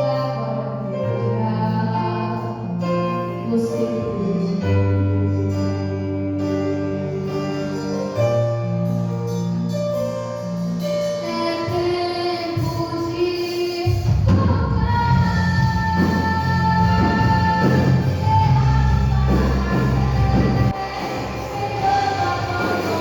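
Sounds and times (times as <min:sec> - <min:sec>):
gospel band playing a hymn: 0:00.0 - 0:23.0
drums and bass: 0:08.8 - 0:23.0.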